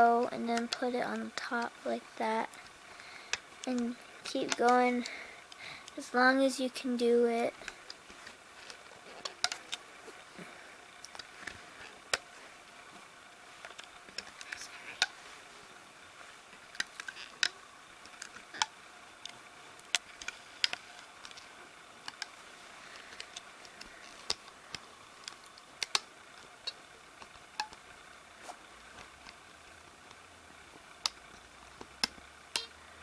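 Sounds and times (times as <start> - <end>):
rubber bands snapping onto pegs: 31.8 - 32.8.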